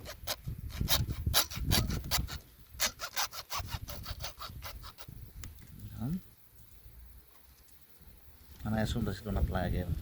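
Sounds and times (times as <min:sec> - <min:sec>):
hand saw cutting plastic pipe: 0:00.0 - 0:05.2.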